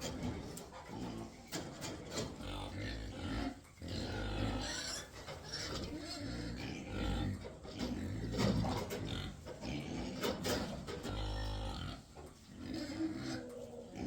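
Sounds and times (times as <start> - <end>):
farm animal noises: 0.0 - 14.0.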